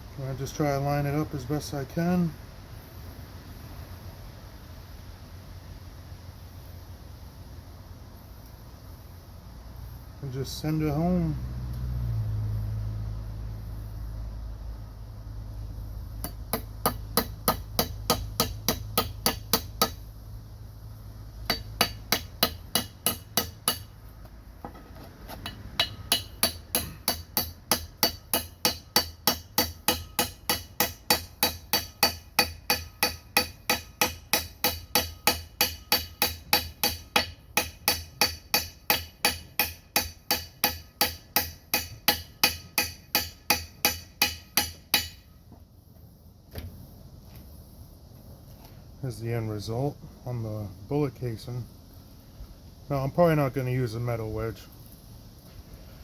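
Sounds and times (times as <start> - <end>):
hammer striking metal: 16.2 - 20.0, 21.5 - 23.9, 25.4 - 45.3.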